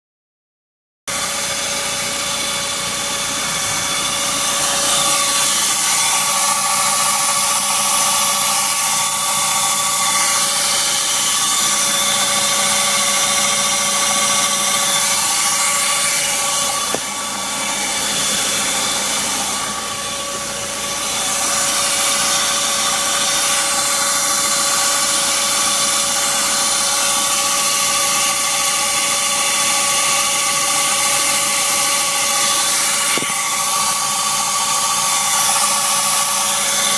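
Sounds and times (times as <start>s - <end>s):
car engine running: 1.1s - 8.6s, 9.4s - 25.2s
high-pitched squeal: 1.1s - 27.8s.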